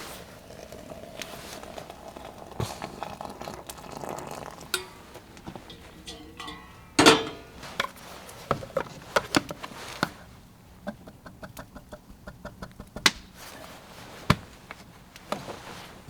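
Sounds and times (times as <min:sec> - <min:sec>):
cooking gear clinks and knocks: 0:04.7 - 0:08.8.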